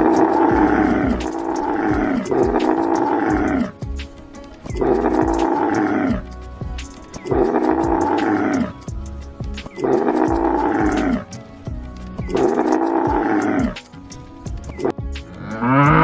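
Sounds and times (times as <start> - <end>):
animal giving rough calls: 0.0 - 4.0, 4.7 - 6.3, 7.2 - 8.9, 9.7 - 11.4, 12.3 - 13.9, 14.8 - 16.0
background music with beat: 0.0 - 16.0.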